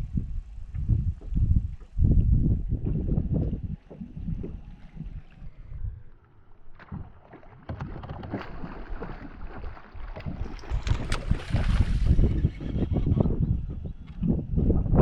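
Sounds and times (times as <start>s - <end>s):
water lapping around a boat: 0.0s - 15.0s
wind rumbling on microphone: 0.0s - 15.0s
sharp clicks and splashes: 2.8s - 12.8s.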